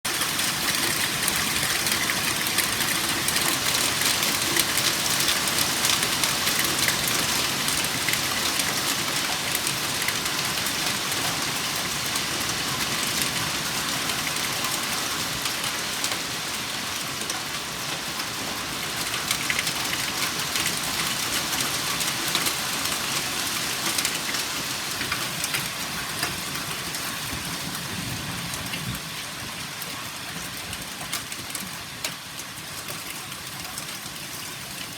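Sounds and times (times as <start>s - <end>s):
hail clattering on hard surfaces: 0.1s - 34.9s.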